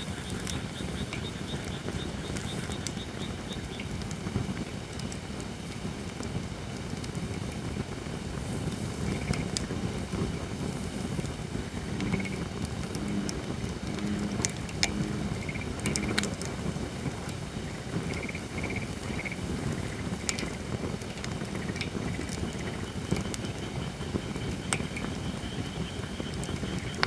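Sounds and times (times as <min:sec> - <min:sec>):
campfire crackling and popping: 0:00.0 - 0:27.0
faint repeated calls: 0:11.8 - 0:16.7.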